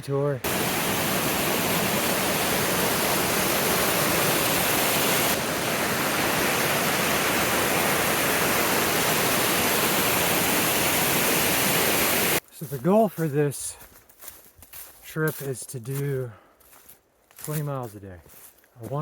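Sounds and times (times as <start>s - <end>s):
rushing water: 0.4s - 12.4s.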